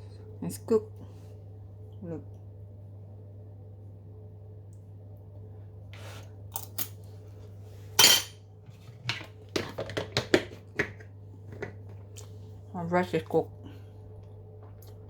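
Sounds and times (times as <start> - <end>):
steady low hum: 0.0 - 9.6, 10.6 - 15.0
dishes and utensils clinking: 8.0 - 8.4.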